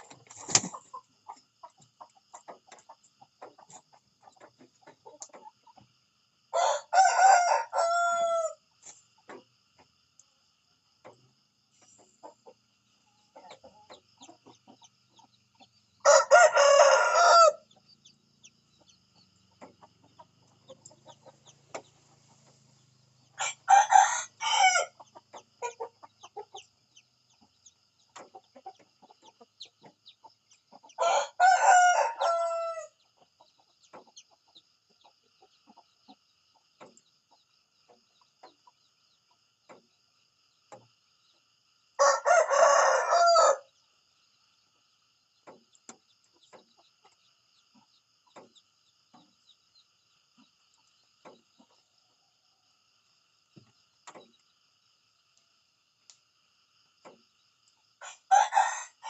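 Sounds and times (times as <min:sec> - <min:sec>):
faint ticks and chirps: 0:00.0 - 0:59.0
rooster crowing: 0:06.5 - 0:08.6, 0:16.0 - 0:17.6, 0:23.4 - 0:25.0, 0:31.0 - 0:33.0, 0:42.0 - 0:43.7, 0:58.0 - 0:59.0.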